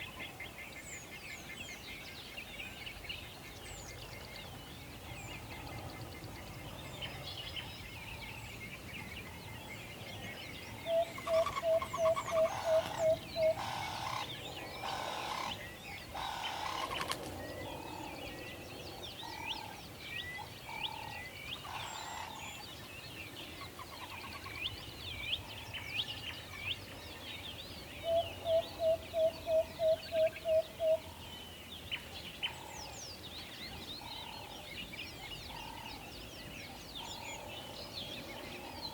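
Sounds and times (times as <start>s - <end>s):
small birds chirping: 0.0s - 38.9s
owl hooting: 10.9s - 15.6s.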